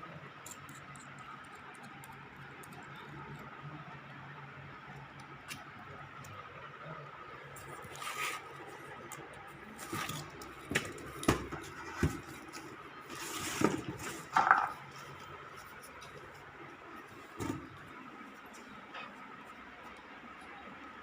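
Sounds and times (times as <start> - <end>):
objects being handled: 7.6 - 19.3.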